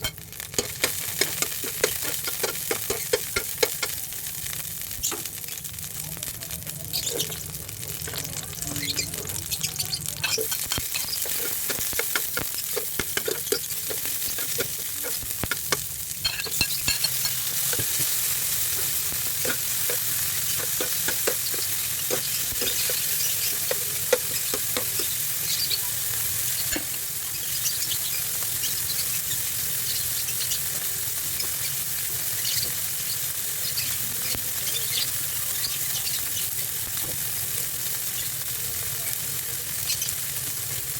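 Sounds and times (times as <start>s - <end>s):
vegetables sizzling in oil: 0.0s - 40.9s
utensil scraping a pan: 0.1s - 4.0s, 10.2s - 25.2s.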